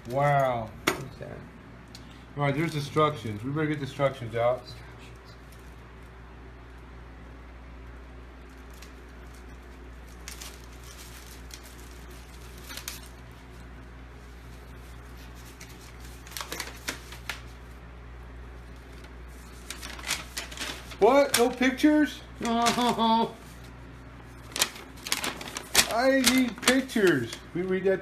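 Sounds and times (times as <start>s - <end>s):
low room hum: 0.0s - 28.0s
paper rustling and crackling: 8.4s - 28.0s.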